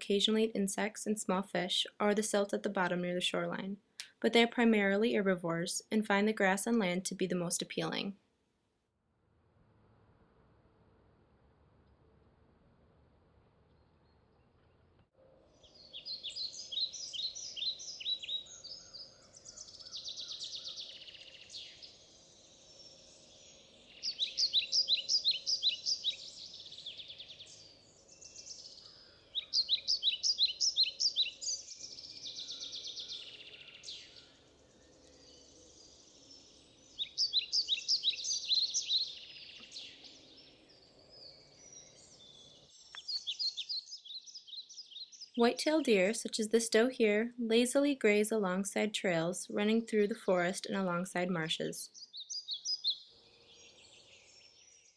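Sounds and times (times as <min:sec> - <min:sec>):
songbird trilling: 0:15.7 - 0:45.4, 0:51.9 - 0:54.7.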